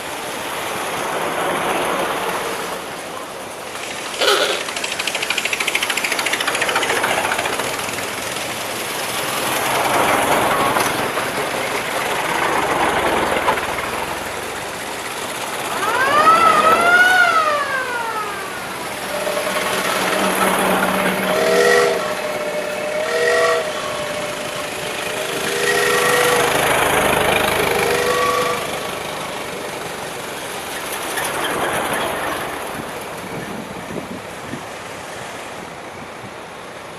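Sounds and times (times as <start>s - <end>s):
cars driving past: 0.0s - 36.1s
horn sweeping up and down: 15.8s - 29.1s.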